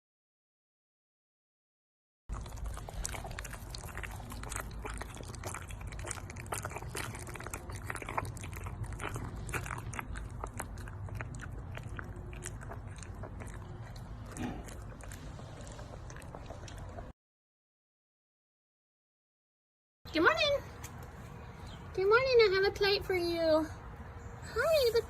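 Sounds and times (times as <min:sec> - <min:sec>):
animal crunching food: 0:02.3 - 0:17.1
low steady hum: 0:02.3 - 0:17.1.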